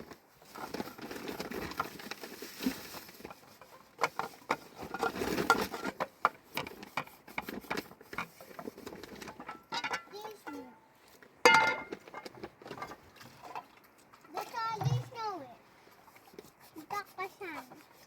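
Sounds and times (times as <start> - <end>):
rustling: 0.0 - 18.0.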